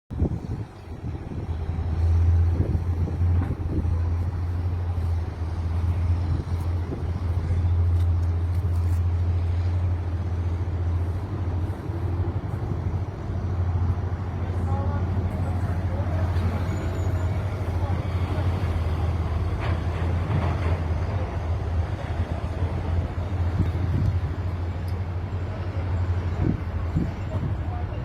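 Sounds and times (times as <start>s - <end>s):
wind buffeting microphone: 0.1s - 8.6s, 17.3s - 28.0s.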